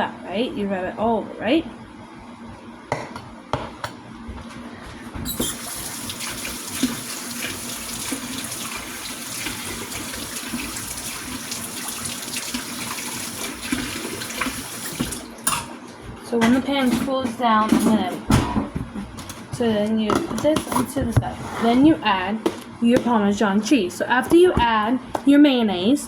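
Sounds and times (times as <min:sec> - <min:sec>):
water running into sink: 0:05.3 - 0:15.7.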